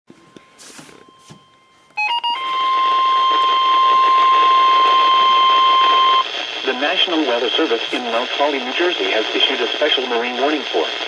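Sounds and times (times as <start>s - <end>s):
continuous warning alarm tone: 0.2s - 6.2s
faint static: 2.8s - 11.0s.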